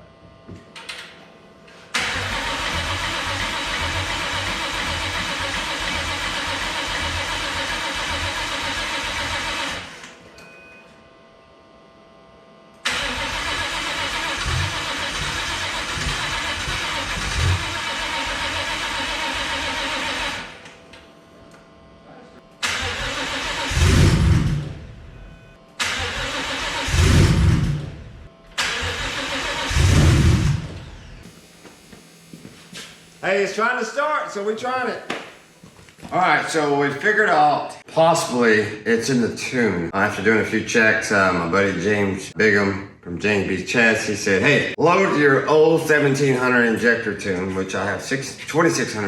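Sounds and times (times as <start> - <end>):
engine cranking on starter: 1.9 - 10.2, 12.8 - 20.7, 22.6 - 25.0, 25.8 - 31.4
engine firing in loud surges: 2.0 - 10.1, 12.9 - 20.6, 22.6 - 25.0, 25.8 - 31.5.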